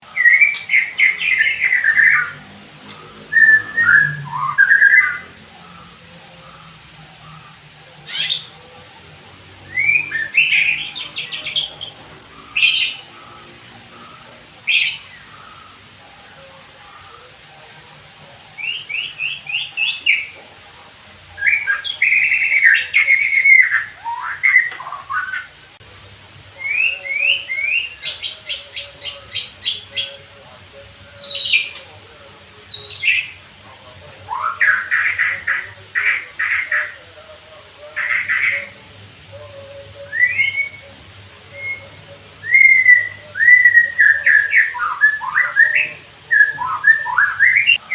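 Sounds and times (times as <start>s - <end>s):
bird whistling song: 0.1s - 5.9s, 7.4s - 8.6s, 9.7s - 15.9s, 18.6s - 20.4s, 21.4s - 25.6s, 26.6s - 30.2s, 31.2s - 31.8s, 32.7s - 33.4s, 40.0s - 47.9s.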